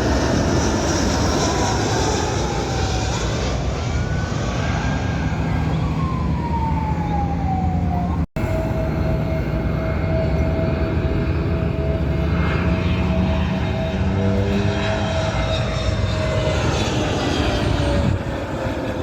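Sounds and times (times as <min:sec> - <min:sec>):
jet airliner passing low: 0:00.0 - 0:19.0.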